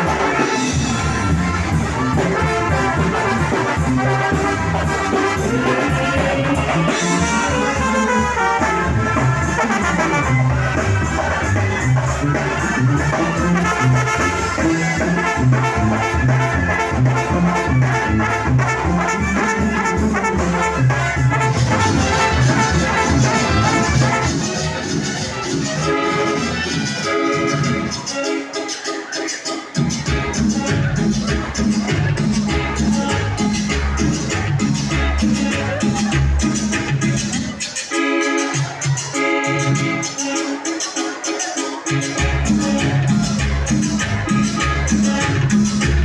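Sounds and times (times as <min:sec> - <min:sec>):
latin dance music with brass: 0:00.0 - 0:46.0.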